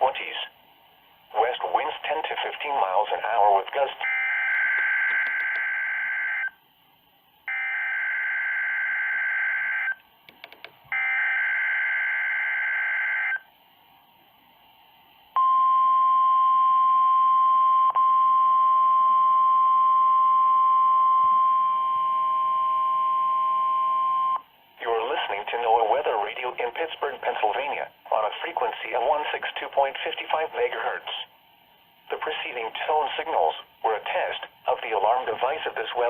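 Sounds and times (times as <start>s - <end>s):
steady warning alarm tone: 4.0s - 6.6s, 7.5s - 10.0s, 10.9s - 13.4s.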